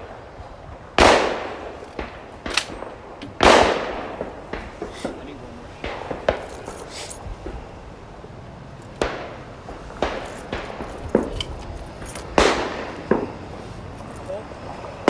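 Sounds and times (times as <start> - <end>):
shotgun shots echoing: 1.0 - 7.0, 9.0 - 13.5.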